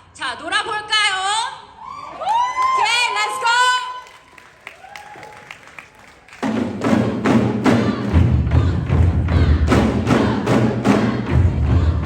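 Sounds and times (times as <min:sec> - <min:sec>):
drum ensemble beating: 0:06.3 - 0:12.0
deep booming bass drum strokes: 0:06.8 - 0:12.0.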